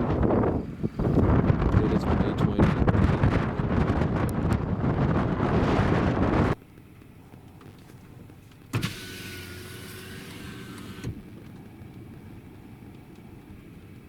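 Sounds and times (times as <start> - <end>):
low steady rumble: 0.0 - 14.0
power window motor: 8.7 - 11.6.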